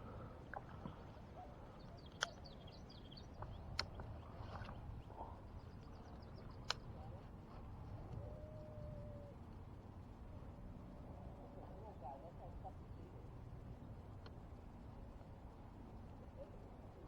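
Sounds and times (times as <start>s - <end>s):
faint birds chirping: 0.0s - 10.2s
low outdoor background noise: 0.0s - 17.0s.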